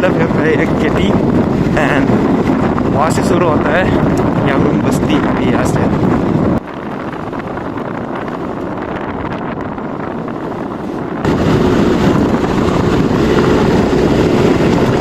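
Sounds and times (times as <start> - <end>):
wind buffeting microphone: 0.0 - 15.0
vehicle running: 5.0 - 15.0.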